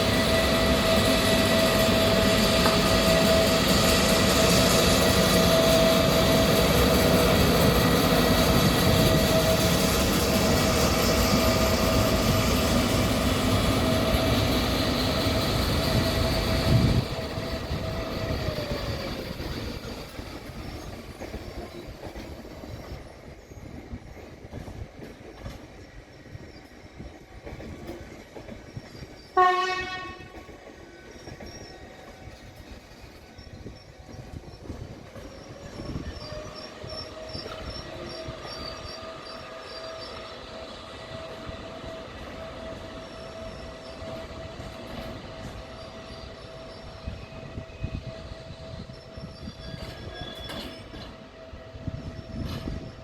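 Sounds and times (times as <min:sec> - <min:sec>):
train rumble: 0:00.0 - 0:53.0
train horn blast: 0:29.4 - 0:30.5
high squeals: 0:30.9 - 0:53.0.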